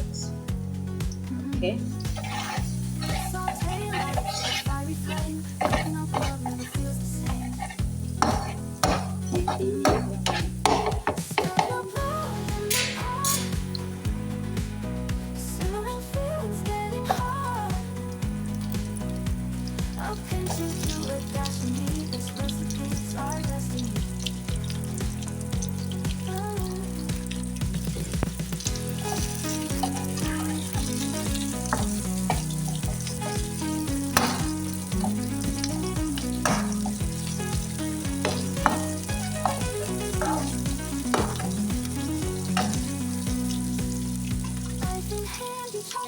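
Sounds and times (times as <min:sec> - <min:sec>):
vegetables sizzling in oil: 0:01.0 - 0:46.0
spatula scraping a pan: 0:02.0 - 0:12.0, 0:12.6 - 0:13.8, 0:17.0 - 0:17.7, 0:20.4 - 0:22.3, 0:27.2 - 0:44.8
spatula knocking against pan: 0:08.2 - 0:11.8.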